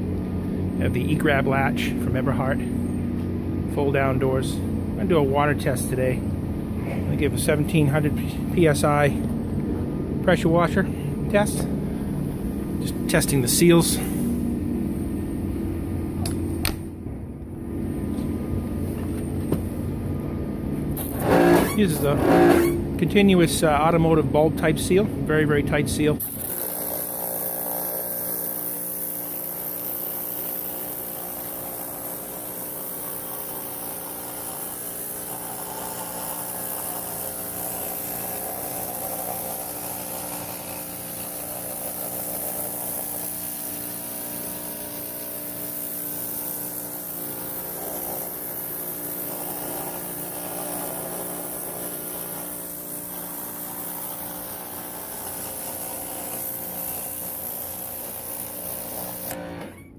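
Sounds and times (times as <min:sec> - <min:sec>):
pressure washer motor hum: 0:00.0 - 0:59.9
high-pressure water jet hissing: 0:26.3 - 0:59.4.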